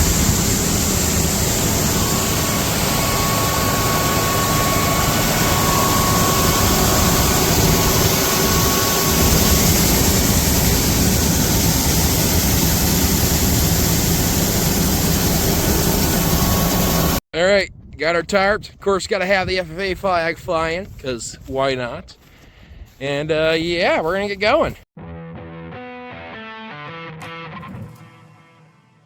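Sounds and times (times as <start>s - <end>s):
heavy machinery engine running: 0.0s - 17.2s.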